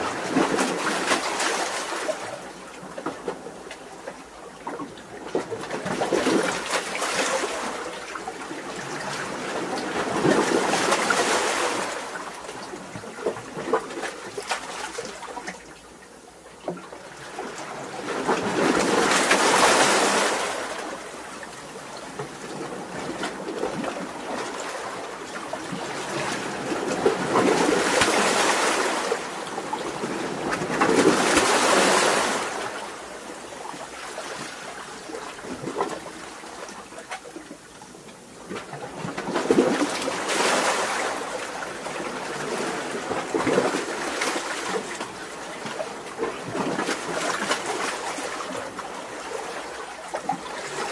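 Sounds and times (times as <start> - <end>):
waves washing over rocks: 0.0 - 2.6, 5.5 - 12.7, 17.4 - 21.4, 22.0 - 36.6, 38.8 - 50.9.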